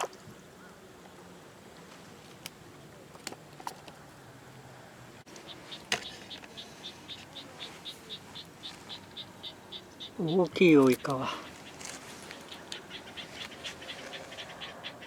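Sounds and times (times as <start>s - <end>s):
insect chirping: 5.3s - 15.0s.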